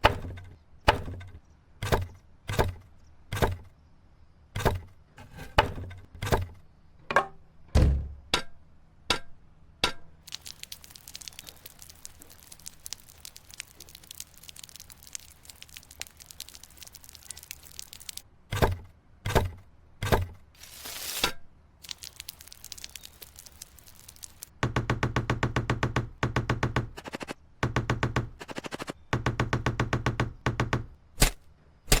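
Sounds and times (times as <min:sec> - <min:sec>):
sharp knocks: 0:00.0 - 0:03.7, 0:04.6 - 0:10.0
light crackling taps and clicks: 0:10.3 - 0:18.3.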